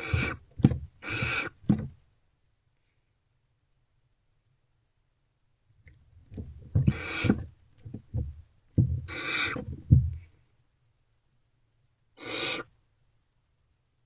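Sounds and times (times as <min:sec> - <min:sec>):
owlets hissing begging calls: 0:00.0 - 0:00.4, 0:01.0 - 0:01.6, 0:06.9 - 0:07.3, 0:09.1 - 0:09.6, 0:12.2 - 0:12.7
knocks and scuffling in nest box: 0:00.0 - 0:02.0, 0:06.3 - 0:10.3.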